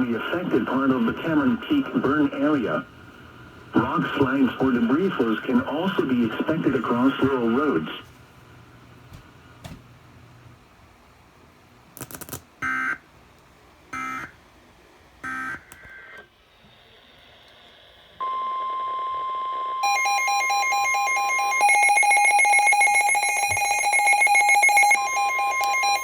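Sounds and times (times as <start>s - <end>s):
rapidly pulsing alarm beep: 12.6s - 13.0s, 14.0s - 14.3s, 15.2s - 15.6s, 18.2s - 26.0s
steady warning alarm tone: 12.6s - 13.0s, 13.9s - 14.4s, 15.2s - 15.7s, 18.2s - 26.0s.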